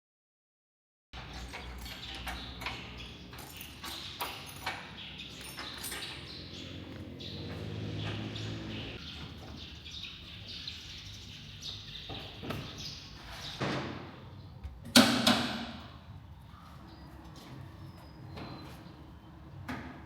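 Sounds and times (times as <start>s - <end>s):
metal parts and tools clanking: 1.2s - 6.8s.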